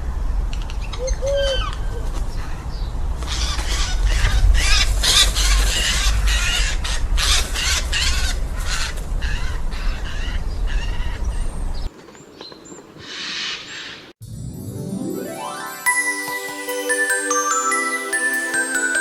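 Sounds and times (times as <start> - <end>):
low wind rumble: 0.0 - 14.4
jay screeching calls: 13.0 - 14.1.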